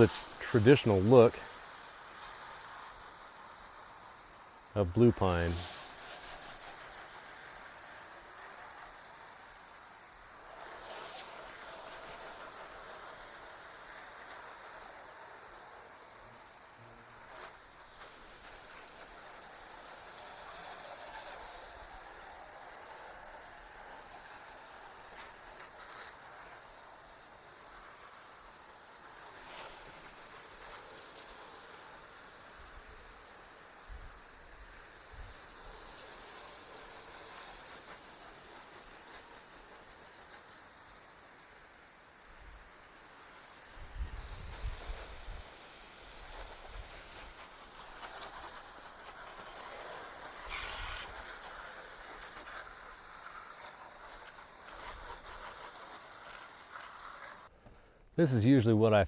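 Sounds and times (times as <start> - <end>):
insect chorus hissing: 0.0 - 57.5.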